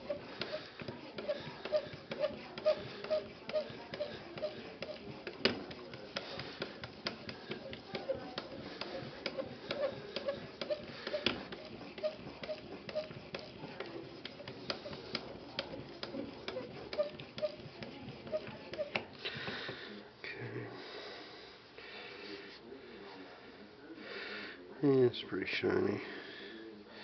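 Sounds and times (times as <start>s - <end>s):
sharpening stone scraping knife blade: 8.0s - 13.5s.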